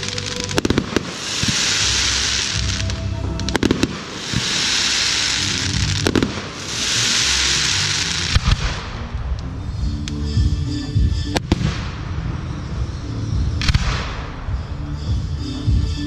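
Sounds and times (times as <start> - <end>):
loud firework hiss: 0.0 - 9.1.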